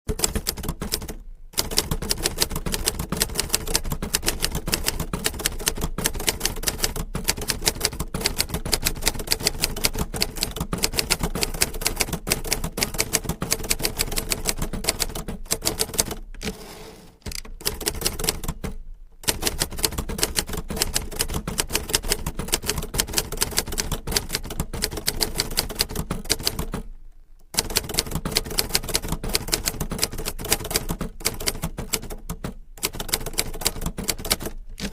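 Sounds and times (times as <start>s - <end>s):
typewriter key strikes: 0.1s - 16.6s, 17.2s - 26.8s.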